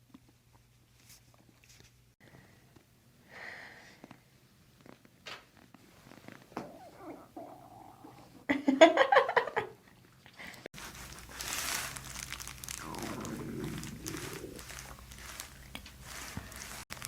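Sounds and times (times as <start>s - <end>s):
stomach rumbling and gurgling: 4.0s - 8.5s, 12.1s - 17.0s
stomach growling: 4.8s - 8.5s, 12.2s - 16.8s.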